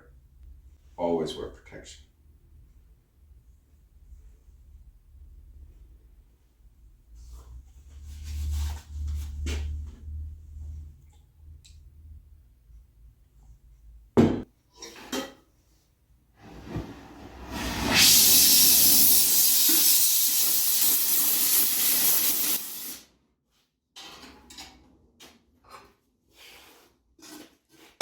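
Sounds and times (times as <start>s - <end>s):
gas torch hissing: 17.2s - 23.0s.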